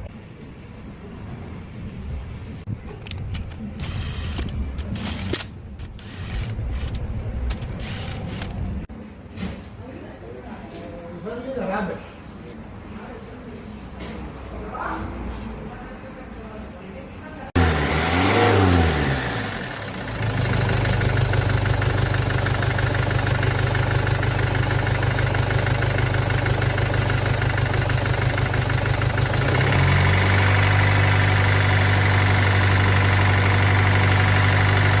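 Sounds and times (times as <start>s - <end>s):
car engine starting and idling: 17.5s - 35.0s.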